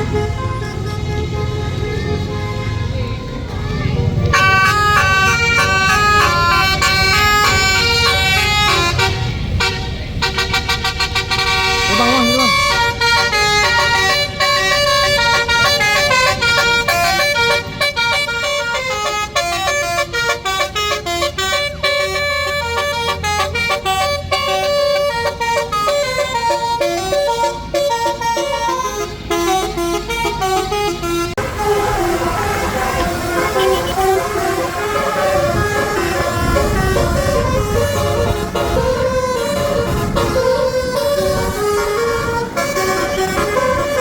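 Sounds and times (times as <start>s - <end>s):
bus musical horn melody: 0.0s - 44.0s.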